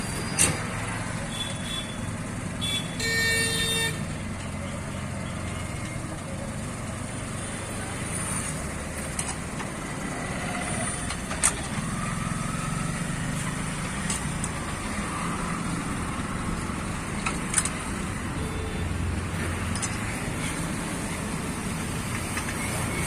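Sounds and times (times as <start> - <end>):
traffic rumble: 0.0 - 23.0
metallic wheel spanner clinks: 19.6 - 20.1.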